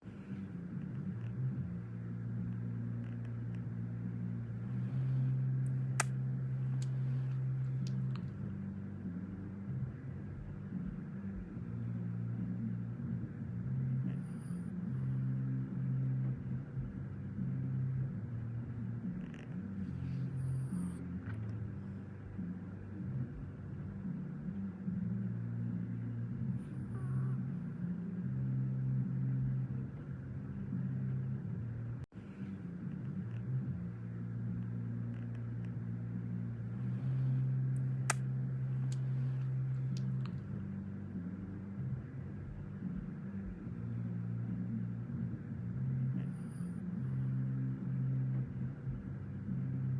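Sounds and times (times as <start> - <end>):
puppy snoring: 13.6 - 16.3, 19.1 - 21.5, 46.0 - 47.7.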